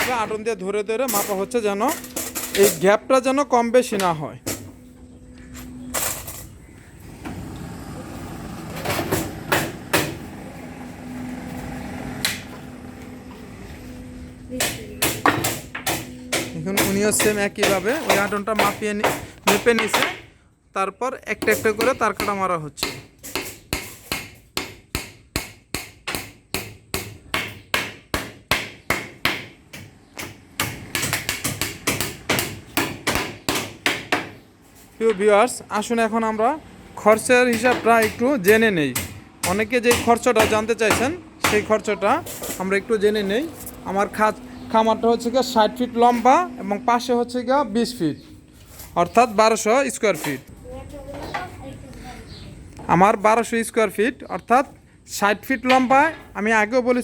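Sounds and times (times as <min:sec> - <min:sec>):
hammer driving nails into bamboo: 0:21.4 - 0:34.4.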